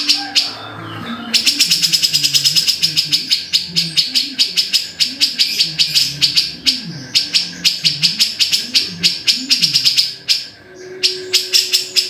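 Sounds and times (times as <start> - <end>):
bird calling in harsh chatter: 0.0 - 12.0.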